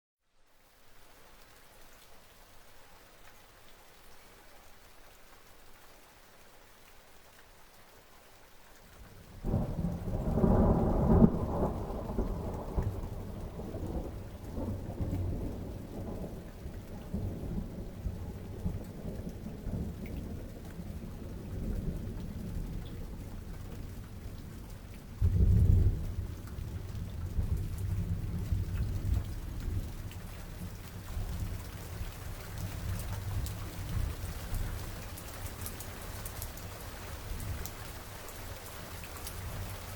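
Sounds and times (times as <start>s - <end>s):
rain hissing: 8.8s - 39.9s
thunder rumbling: 9.4s - 31.6s.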